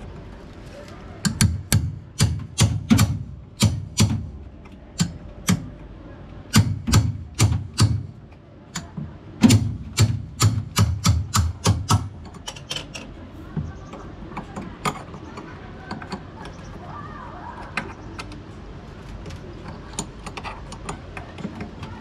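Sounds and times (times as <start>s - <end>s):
sharp knocks on metal: 1.2s - 4.3s, 6.5s - 8.2s, 8.8s - 12.5s.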